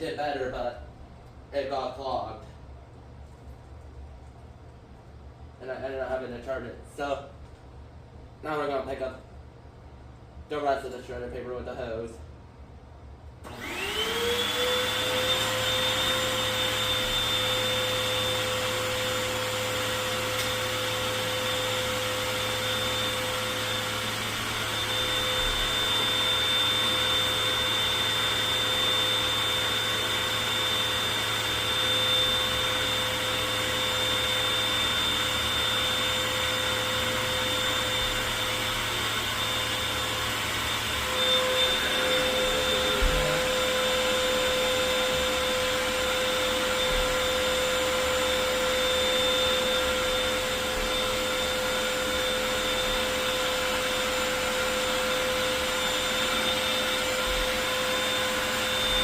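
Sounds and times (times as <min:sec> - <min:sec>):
vacuum cleaner whining: 0:13.4 - 0:59.0.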